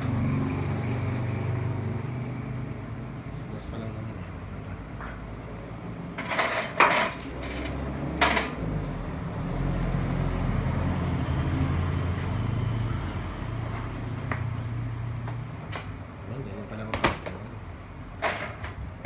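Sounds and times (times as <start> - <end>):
low engine hum: 7.7 - 16.9
sharp knocks: 16.9 - 17.5.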